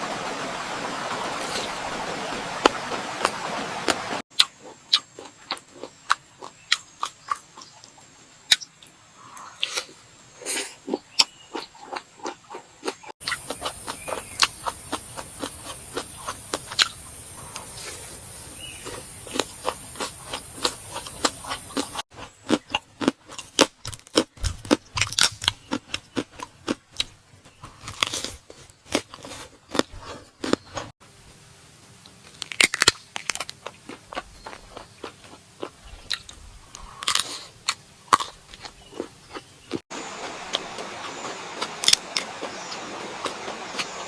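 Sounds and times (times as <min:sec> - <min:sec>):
crunchy bites and chewing: 0:04.3 - 0:07.8, 0:09.4 - 0:30.9, 0:32.2 - 0:44.0
steady hiss: 0:13.2 - 0:22.0, 0:31.0 - 0:33.4.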